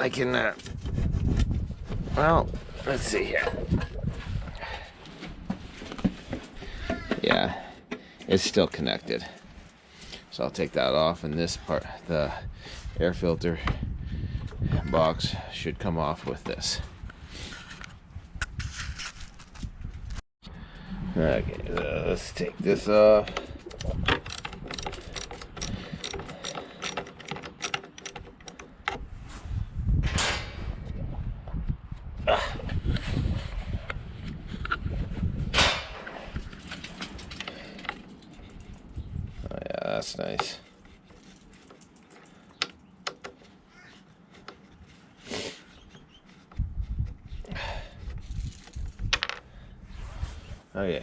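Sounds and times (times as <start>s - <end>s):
clicks and knocks of engine parts: 23.3s - 29.0s, 35.6s - 38.9s, 40.2s - 43.6s
socket ratchet clicking: 23.7s - 28.9s.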